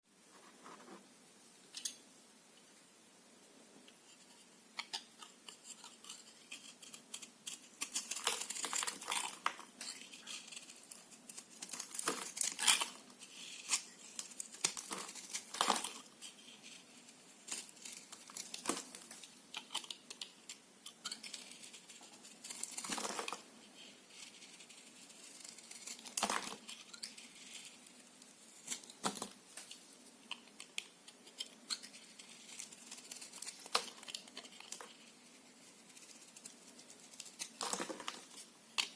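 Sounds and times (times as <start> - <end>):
knife cutting bar soap: 4.8 - 16.8.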